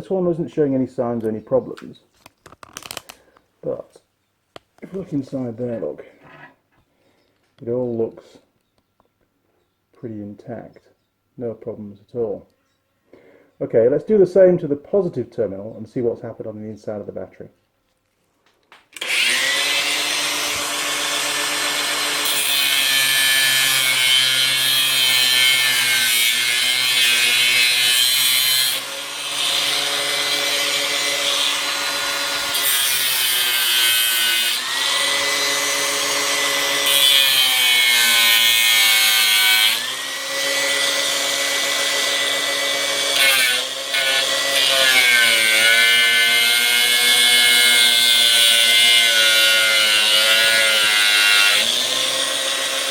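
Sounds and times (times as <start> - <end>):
power tool motor under load: 18.9 - 44.6.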